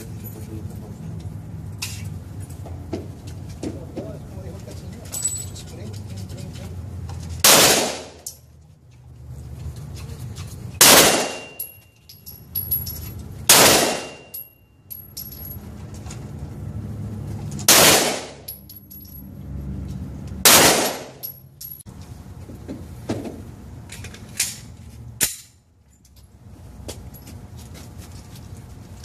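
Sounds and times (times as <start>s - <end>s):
gunshots with echo: 10.8s - 11.5s, 13.5s - 14.2s, 17.7s - 18.4s, 20.4s - 21.2s
light metallic clinks: 11.4s - 13.2s, 14.1s - 15.7s, 18.5s - 19.4s, 21.2s - 21.9s.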